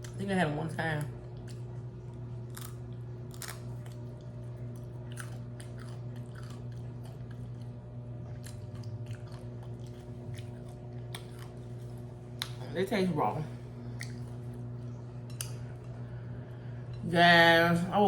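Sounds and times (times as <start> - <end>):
low electrical hum: 0.0 - 18.0
person chewing food: 1.3 - 12.6, 13.8 - 16.2.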